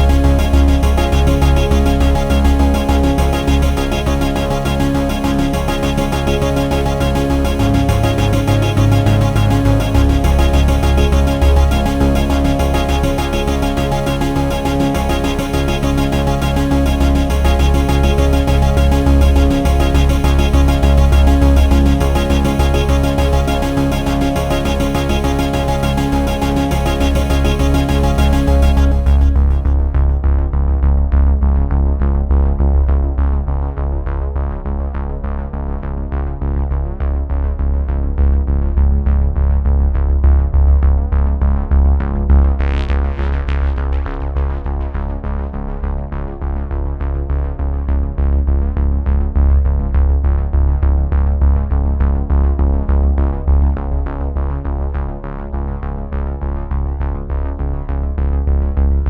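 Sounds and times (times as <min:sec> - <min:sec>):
synthesizer music with heavy bass: 0:00.0 - 0:30.3.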